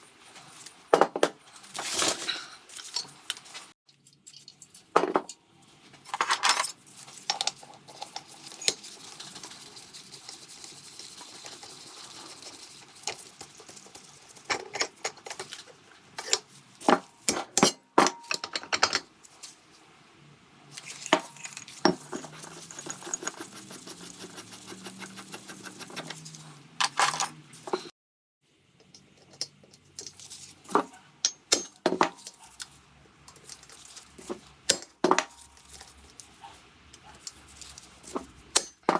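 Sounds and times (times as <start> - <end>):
metal tools clinking on engine parts: 26.8 - 27.4.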